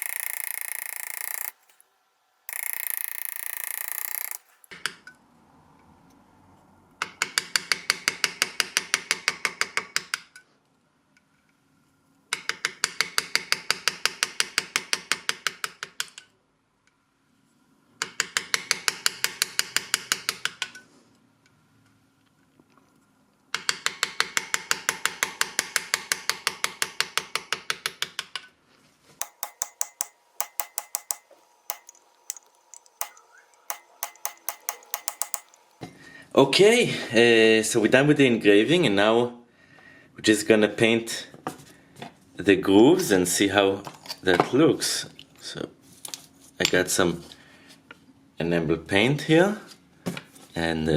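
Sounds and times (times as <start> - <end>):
engraving tool rapid metallic taps: 0.0 - 1.7, 2.5 - 4.5, 23.6 - 28.5, 29.2 - 35.7.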